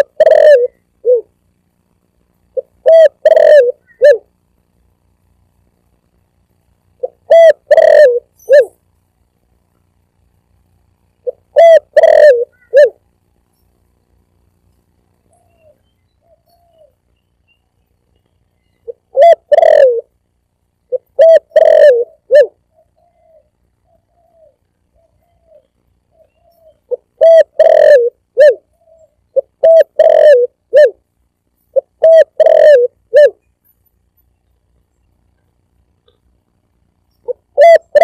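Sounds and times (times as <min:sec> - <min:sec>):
dove cooing: 0:00.0 - 0:01.3, 0:02.5 - 0:04.4, 0:07.0 - 0:08.8, 0:11.2 - 0:13.0, 0:15.3 - 0:17.1, 0:18.8 - 0:20.2, 0:20.9 - 0:31.0, 0:31.7 - 0:33.4, 0:37.2 - 0:38.0.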